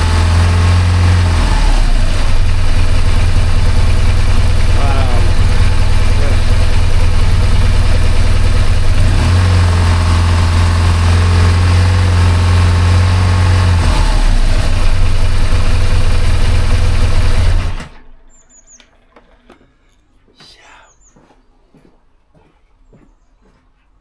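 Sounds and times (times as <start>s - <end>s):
motorcycle engine idling: 0.0s - 18.1s.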